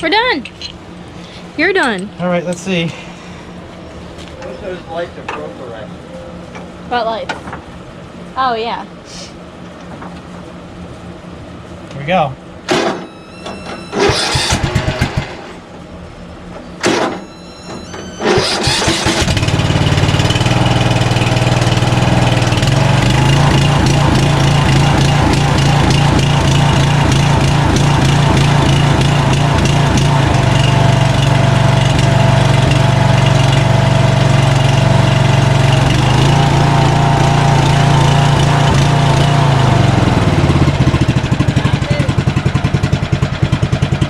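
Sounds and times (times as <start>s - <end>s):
riding lawn mower engine running: 12.7s - 44.0s.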